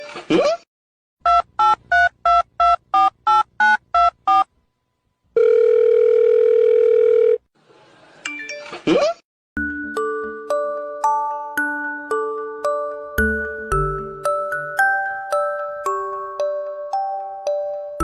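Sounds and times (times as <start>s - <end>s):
long steady dial tone: 5.2s - 7.4s.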